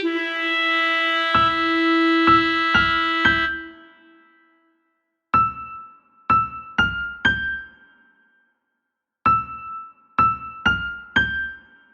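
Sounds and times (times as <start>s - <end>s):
soft piano-like notes: 5.3s - 8.4s, 9.2s - 11.9s.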